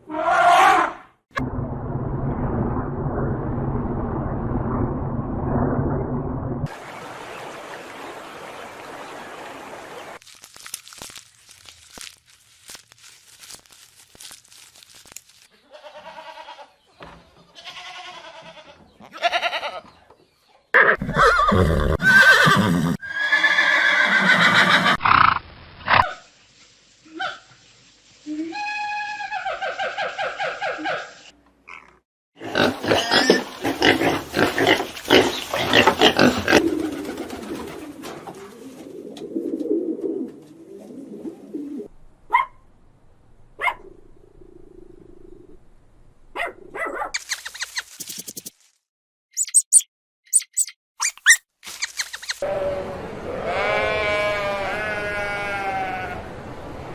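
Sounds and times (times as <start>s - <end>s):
quick repeated pitched calls: 47.2s - 48.6s, 49.4s - 52.4s.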